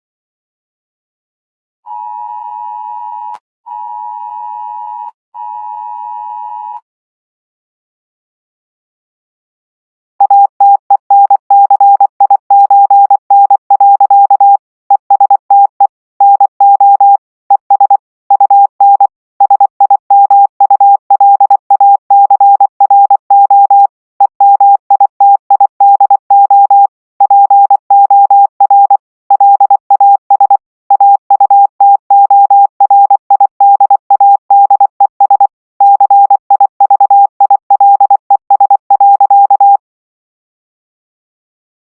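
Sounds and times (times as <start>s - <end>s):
electronic beeps keyed on and off: 10.2s - 39.8s.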